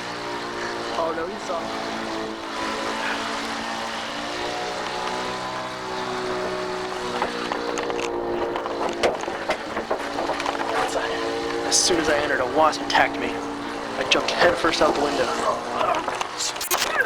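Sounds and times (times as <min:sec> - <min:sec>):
lawn mower engine running: 0:00.0 - 0:17.0
sharp knocks and clatters: 0:04.4 - 0:16.4.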